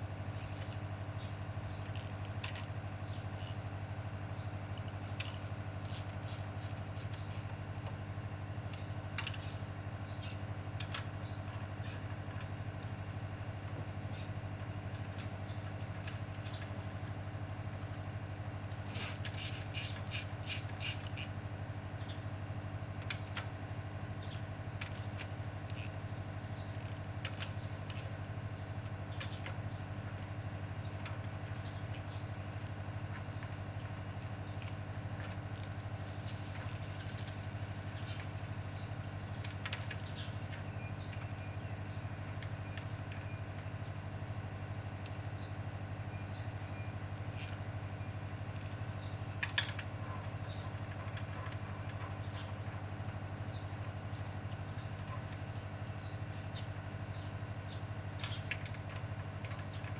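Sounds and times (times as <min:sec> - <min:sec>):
high whine: 0:00.0 - 0:10.4.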